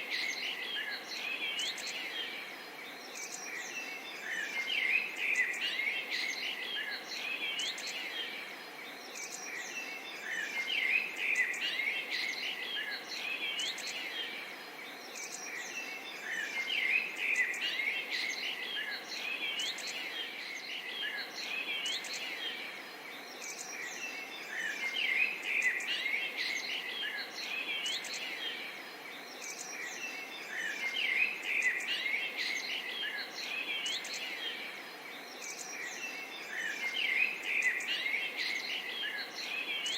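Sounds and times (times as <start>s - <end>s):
small birds chirping and singing: 0.0s - 39.9s
steady background hiss: 0.0s - 39.9s.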